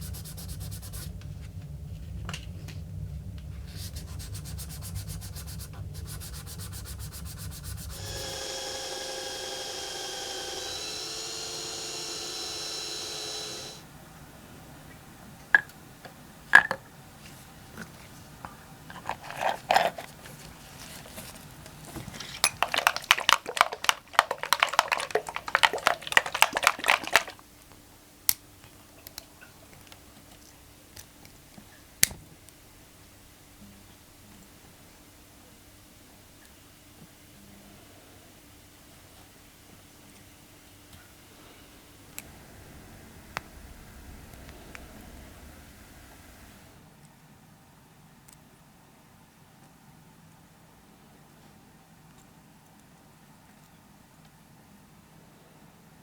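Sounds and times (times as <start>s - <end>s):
hand-sanding strokes: 0.0s - 1.2s, 3.7s - 13.8s
small power tool running: 4.0s - 13.9s.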